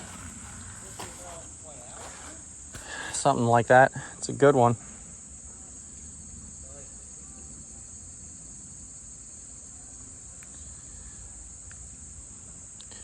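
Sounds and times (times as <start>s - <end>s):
high-pitched insect chorus: 0.0s - 13.0s.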